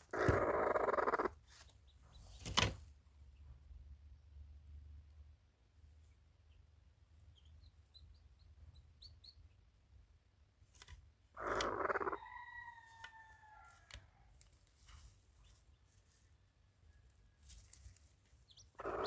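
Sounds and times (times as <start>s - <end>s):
rooster crowing: 11.9s - 14.1s.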